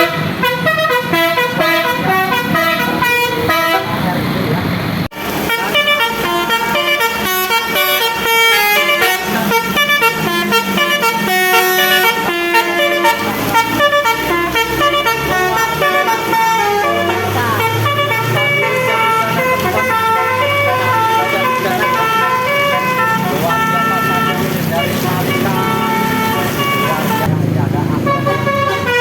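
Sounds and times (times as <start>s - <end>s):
bus air horns playing melody: 0.0s - 4.2s, 5.1s - 29.0s.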